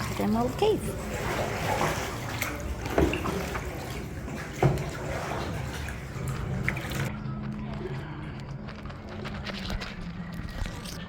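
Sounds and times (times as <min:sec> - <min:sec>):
water lapping around a kayak: 0:00.0 - 0:07.1.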